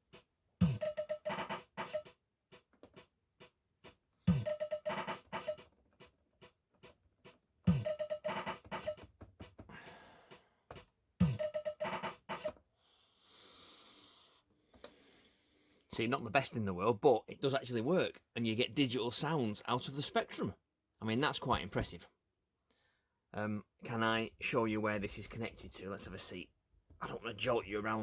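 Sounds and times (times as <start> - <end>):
drum machine pattern: 0.0 - 12.6.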